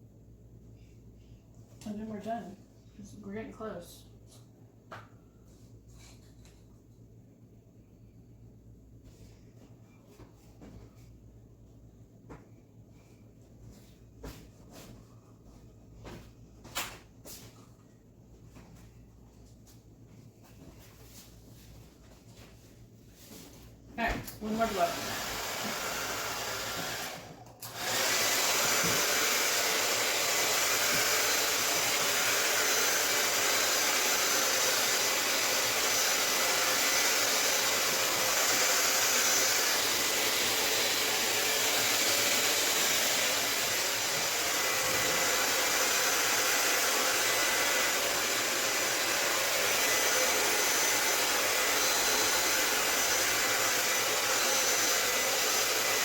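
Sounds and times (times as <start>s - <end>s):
hair dryer blowing: 24.2s - 56.0s.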